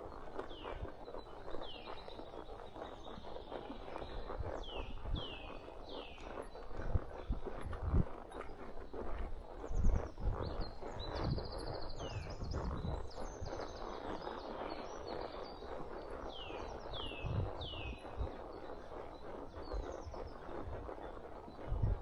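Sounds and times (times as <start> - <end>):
horse hooves on dirt trail: 0.0 - 22.0
songbirds singing: 0.0 - 22.0.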